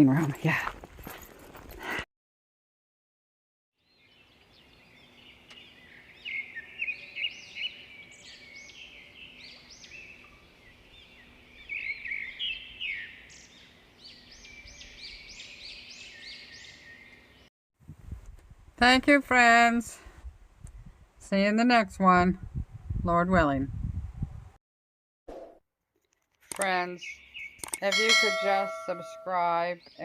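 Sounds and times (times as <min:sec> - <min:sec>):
songbirds singing: 0:03.8 - 0:17.5, 0:26.6 - 0:30.0.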